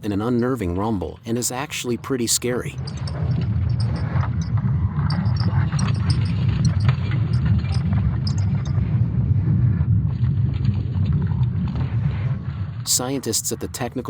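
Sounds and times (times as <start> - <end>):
deep rumble: 2.6 - 14.0
faint crackles and clicks: 2.7 - 13.0.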